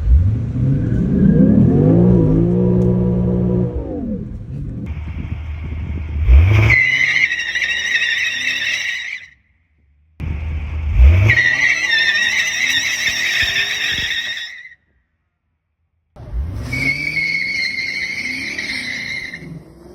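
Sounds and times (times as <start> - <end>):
car engine revving hard: 0.0 - 8.8, 10.2 - 14.1, 16.2 - 19.9
tyres squealing: 6.6 - 9.4, 11.3 - 14.8, 16.6 - 19.9.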